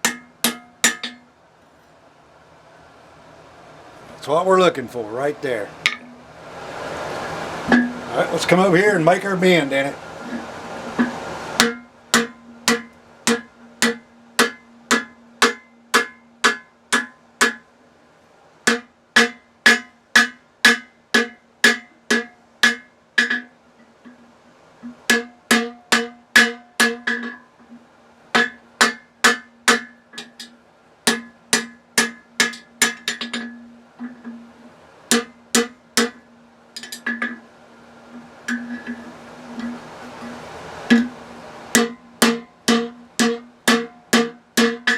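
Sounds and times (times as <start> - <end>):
hammer striking steel on anvil: 0.0 - 1.3, 5.8 - 6.2, 7.7 - 8.1, 11.0 - 17.7, 18.7 - 23.5, 25.1 - 27.4, 28.4 - 34.4, 35.1 - 37.4, 38.5 - 44.9.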